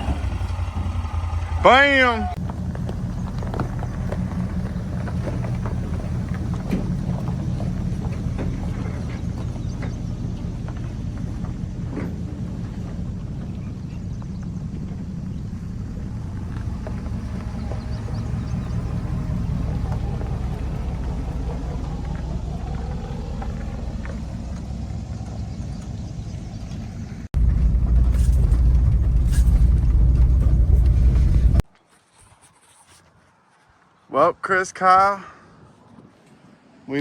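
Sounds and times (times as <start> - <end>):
heavy loud rumble: 0.0 - 31.6
vehicle engine rumble: 0.0 - 31.8.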